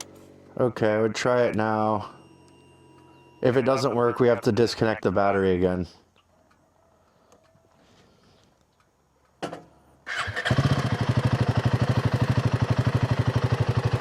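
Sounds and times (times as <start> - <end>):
motorcycle engine idling: 10.1 - 14.0.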